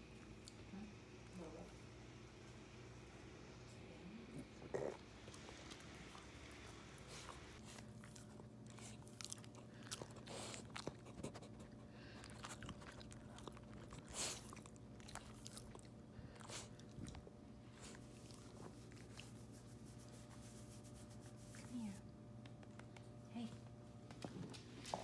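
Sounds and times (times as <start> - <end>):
dog chewing hard food: 7.6 - 19.2.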